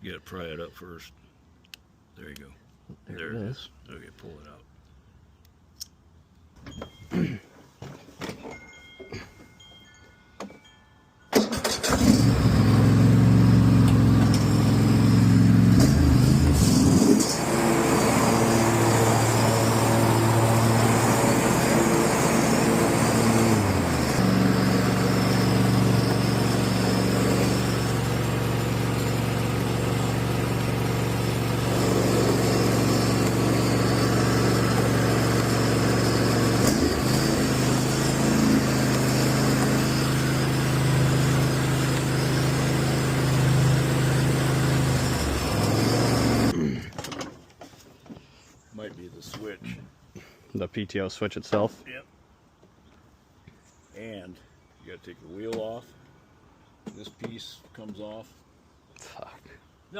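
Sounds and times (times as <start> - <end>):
riding mower engine running: 9.2 - 47.3.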